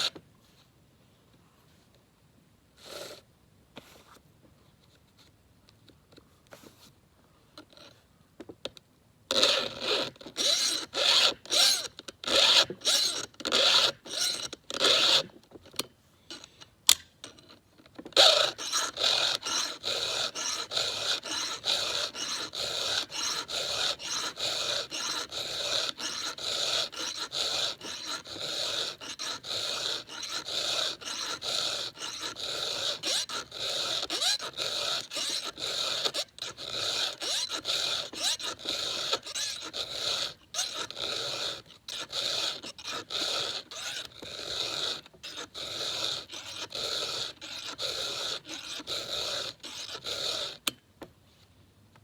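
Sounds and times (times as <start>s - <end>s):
file rasping on saw chain: 9.3s - 15.3s, 18.2s - 50.7s.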